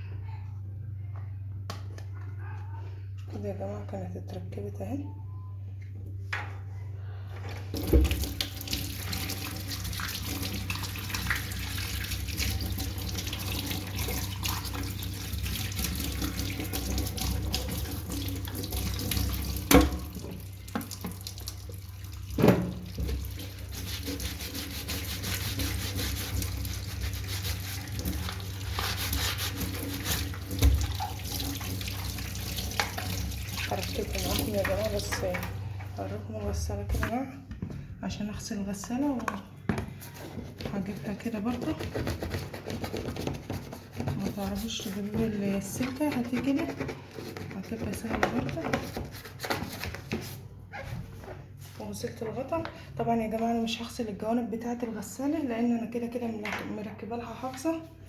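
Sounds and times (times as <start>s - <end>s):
tap water running into sink: 7.8s - 35.6s.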